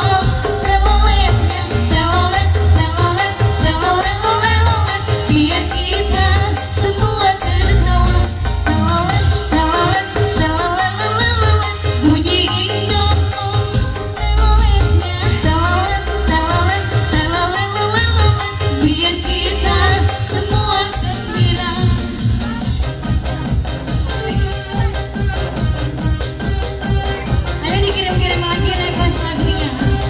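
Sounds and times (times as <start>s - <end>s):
upbeat song with steady beat: 0.0s - 30.0s.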